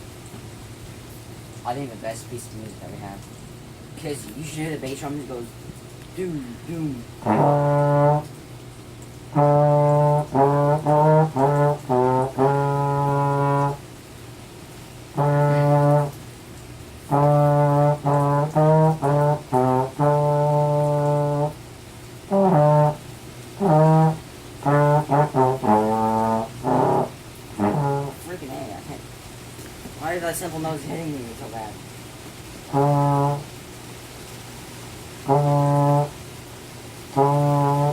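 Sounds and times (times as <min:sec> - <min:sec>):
brass instrument playing: 0:07.0 - 0:08.4, 0:09.2 - 0:13.9, 0:15.1 - 0:16.2, 0:17.0 - 0:21.6, 0:22.2 - 0:28.9, 0:32.6 - 0:33.6, 0:35.1 - 0:36.4, 0:37.0 - 0:37.9.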